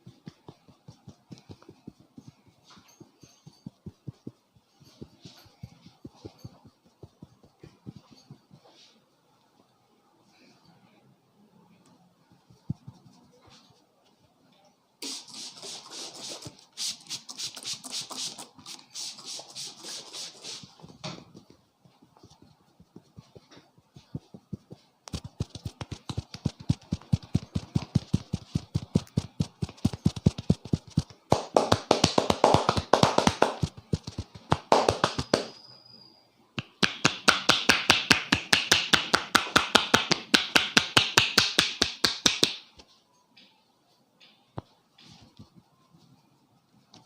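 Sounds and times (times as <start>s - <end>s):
hands tapping and slapping head: 24.7s - 35.6s, 36.6s - 42.8s.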